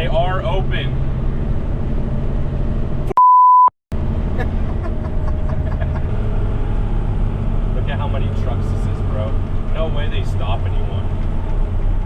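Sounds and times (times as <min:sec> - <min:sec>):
censor bleep: 0:03.1 - 0:03.7
diesel truck engine running: 0:03.9 - 0:12.0.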